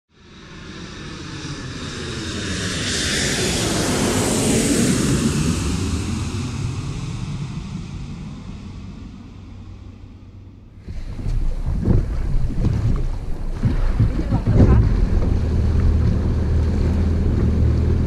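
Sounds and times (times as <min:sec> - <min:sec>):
engine passing by: 0:12.8 - 0:18.0.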